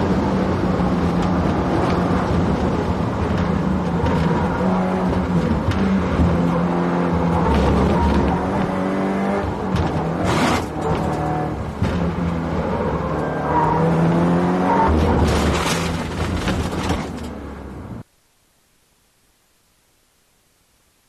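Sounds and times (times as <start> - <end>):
car engine revving: 0.0 - 16.7.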